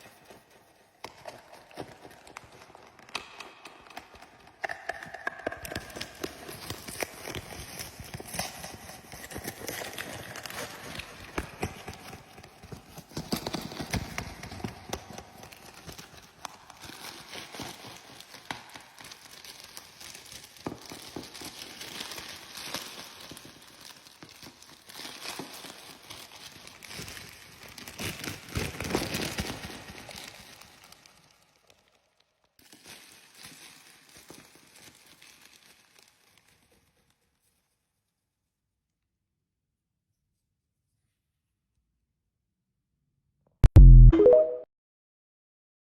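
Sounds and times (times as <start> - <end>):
cardboard and plastic crinkling: 6.2 - 31.2, 32.6 - 36.6.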